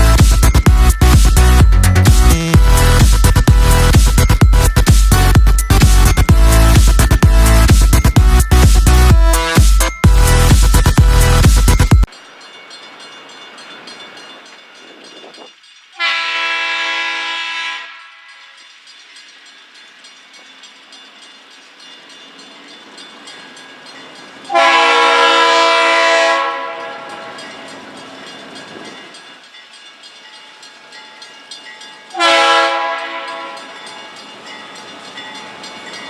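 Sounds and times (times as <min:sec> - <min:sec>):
train rolling on rails: 0:00.0 - 0:36.0
locomotive air horn blasts: 0:16.0 - 0:18.3, 0:24.5 - 0:27.3, 0:32.2 - 0:33.7.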